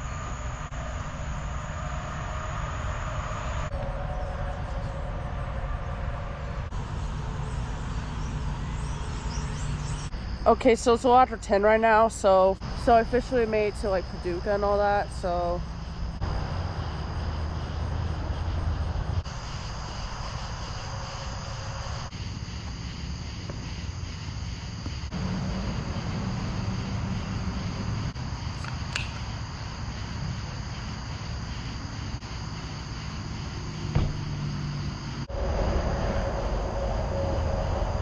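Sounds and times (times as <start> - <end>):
car road noise: 0.0 - 10.1, 16.1 - 22.1, 25.0 - 29.4, 32.7 - 38.0
night insects chirring: 0.0 - 38.0.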